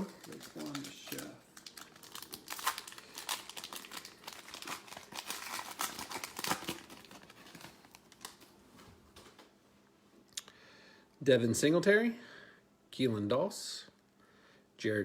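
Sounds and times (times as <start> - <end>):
card pack wrapper tearing and crinkling: 0.0 - 8.5.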